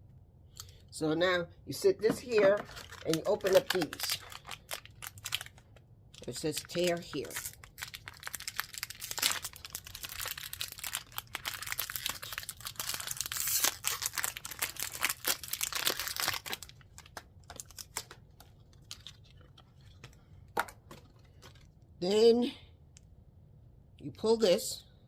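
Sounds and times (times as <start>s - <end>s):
packaging pouch tearing and crinkling: 2.4s - 19.5s.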